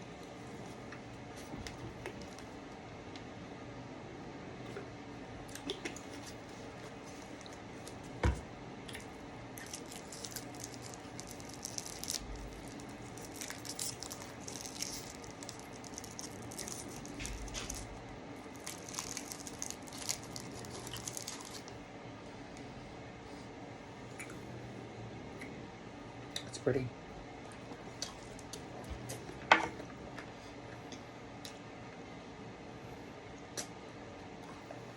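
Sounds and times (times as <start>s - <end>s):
candy wrapper crinkling: 7.0s - 8.0s, 9.6s - 21.8s.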